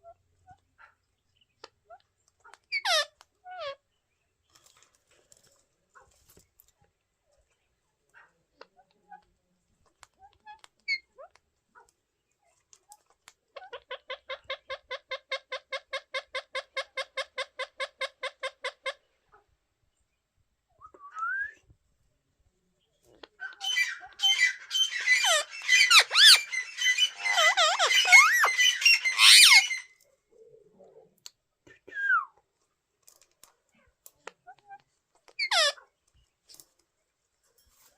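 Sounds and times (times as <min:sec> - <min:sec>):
parrots calling harsh notes: 0:02.7 - 0:03.8, 0:23.4 - 0:30.0, 0:35.4 - 0:35.8
parrots screeching: 0:02.7 - 0:03.8, 0:23.5 - 0:30.0, 0:35.4 - 0:35.8.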